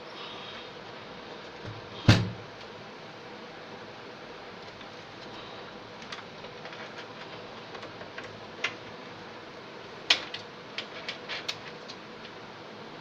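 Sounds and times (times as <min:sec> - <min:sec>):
steady hiss: 0:00.0 - 0:13.0.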